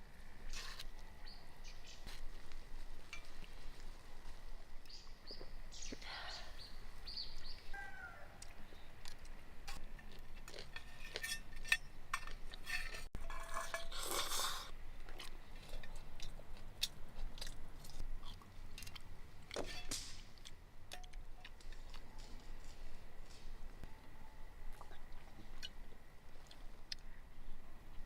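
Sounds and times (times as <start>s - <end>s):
person chewing food: 8.4s - 11.2s, 14.1s - 19.1s, 24.7s - 27.1s.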